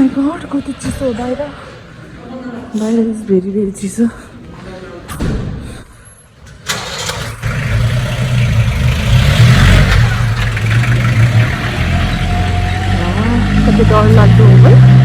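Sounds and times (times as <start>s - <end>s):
vehicle engine running: 6.8s - 15.0s.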